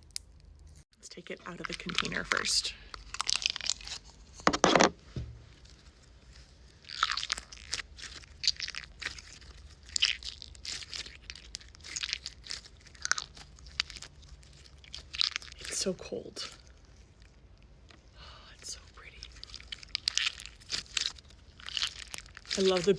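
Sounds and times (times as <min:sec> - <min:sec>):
slime squeezed with crackly clicks: 0:01.5 - 0:04.1, 0:06.8 - 0:18.1, 0:18.8 - 0:22.9.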